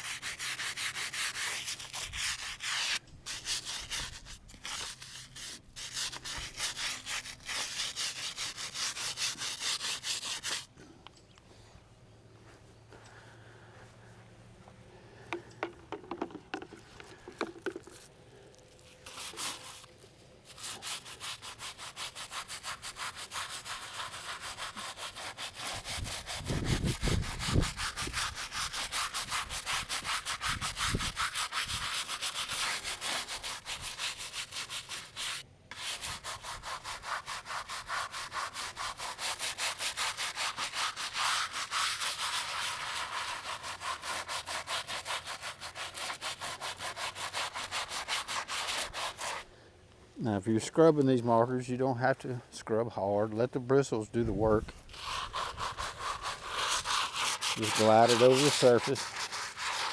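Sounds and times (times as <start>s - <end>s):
brush scrubbing stone: 0.0s - 10.7s, 15.0s - 49.5s, 54.2s - 59.9s.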